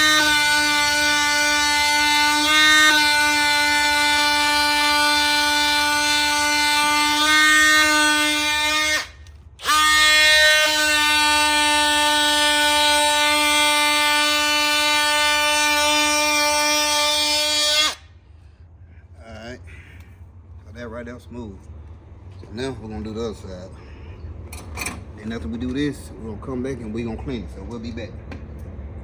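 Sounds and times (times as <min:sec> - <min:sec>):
power sander whining: 0:00.0 - 0:18.0.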